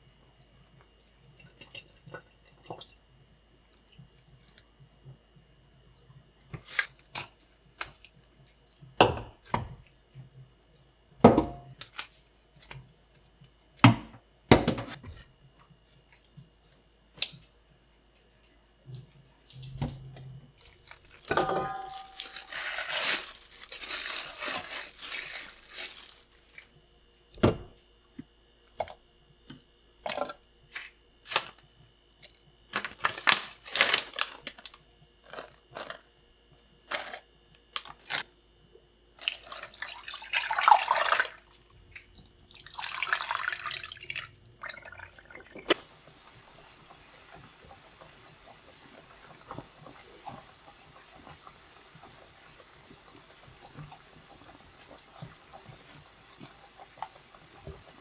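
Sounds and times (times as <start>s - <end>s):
packaging rustling and tearing: 20.6s - 26.8s, 32.7s - 36.1s, 37.8s - 38.3s
dishes and utensils clinking: 21.2s - 23.7s.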